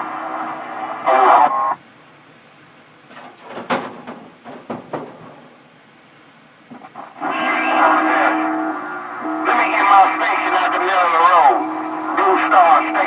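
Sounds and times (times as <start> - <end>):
radio hiss: 0.0 - 1.8, 6.7 - 13.0
steady radio tone: 0.9 - 1.8, 6.8 - 13.0
garbled radio voice: 1.1 - 1.8, 9.4 - 11.6, 12.2 - 13.0
static crackles and pops: 6.6 - 7.3.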